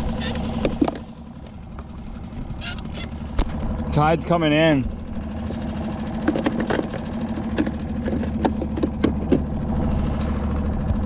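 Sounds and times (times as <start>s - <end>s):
small motor humming: 0.0s - 3.9s
sharp clicks and knocks: 6.2s - 9.5s.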